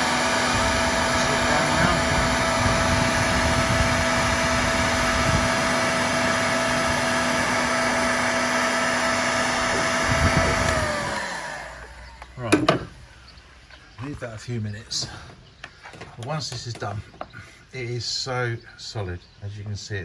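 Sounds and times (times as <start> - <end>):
heat gun blowing: 0.0 - 13.4
fan winding down: 0.0 - 14.3.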